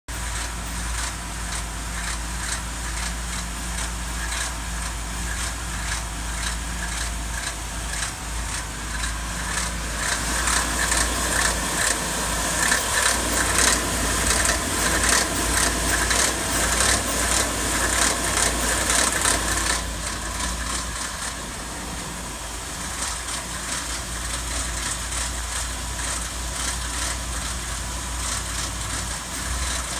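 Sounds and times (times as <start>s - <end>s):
car engine rumbling: 0.1s - 29.9s
metallic engine rattle: 0.1s - 29.9s.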